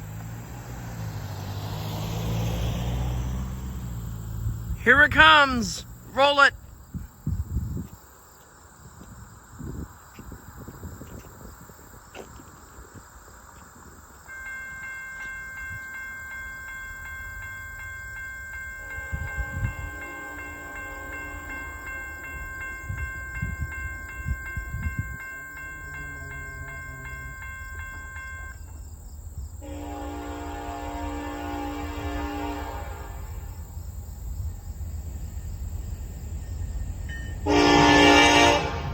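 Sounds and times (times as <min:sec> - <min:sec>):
locomotive horn blasts: 0:14.3 - 0:28.6, 0:29.6 - 0:33.7, 0:37.3 - 0:38.9
railroad crossing bell ringing: 0:14.3 - 0:28.8, 0:35.4 - 0:38.9.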